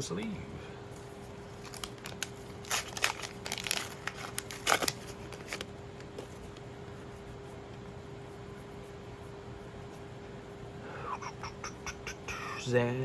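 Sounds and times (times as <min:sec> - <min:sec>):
faint steady hum: 0:00.0 - 0:13.0
crinkling plastic rustles: 0:01.4 - 0:06.4.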